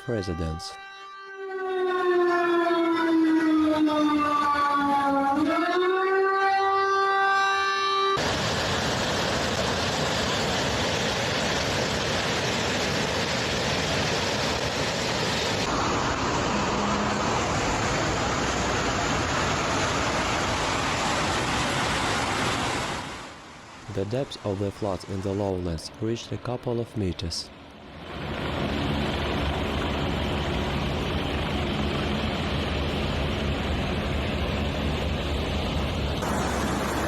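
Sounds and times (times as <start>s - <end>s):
siren wailing: 0.0s - 8.2s, 15.7s - 20.8s
loud steady rushing noise: 8.2s - 25.6s, 27.8s - 37.0s.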